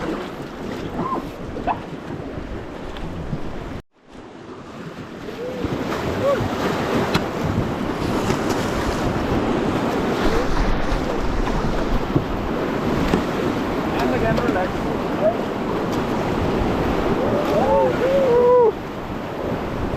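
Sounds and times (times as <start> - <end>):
wind buffeting microphone: 4.8 - 19.9.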